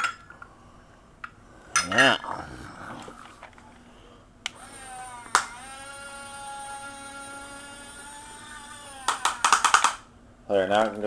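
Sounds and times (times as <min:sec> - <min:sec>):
toy electric motor whine: 0:04.5 - 0:10.1.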